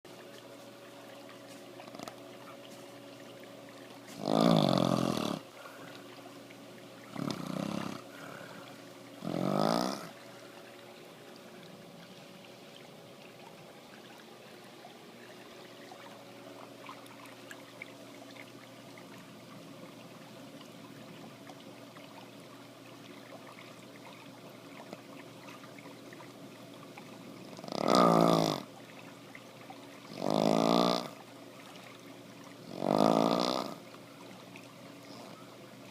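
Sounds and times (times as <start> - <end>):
faint steady hum: 0.1 - 35.9
person snoring: 4.2 - 5.4, 7.2 - 8.0, 9.2 - 10.1, 32.8 - 33.8.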